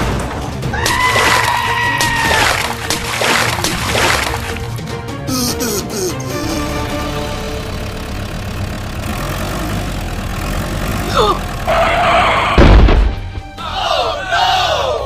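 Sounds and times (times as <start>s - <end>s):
engine noise: 6.3s - 12.6s
heavy low thump: 12.6s - 13.5s.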